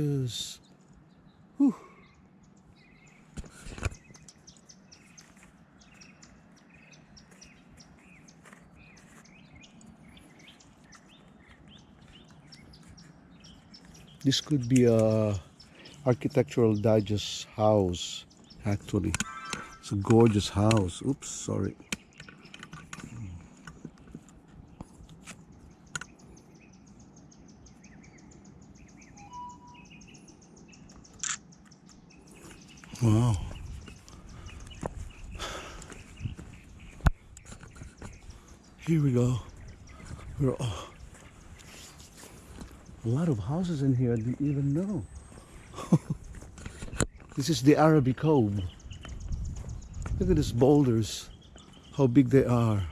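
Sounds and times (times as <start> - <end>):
faint birds chirping: 0.0 - 52.9
fast ticking bird call: 18.4 - 21.1
light clicks: 19.0 - 21.0
whistled note: 19.2 - 19.9, 29.2 - 29.8.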